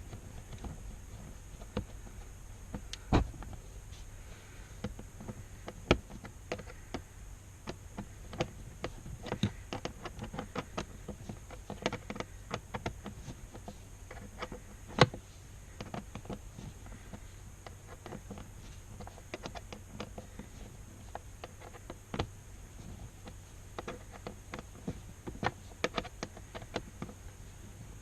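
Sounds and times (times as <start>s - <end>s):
plastic and tool clicks: 7.7s - 15.2s, 23.2s - 27.2s.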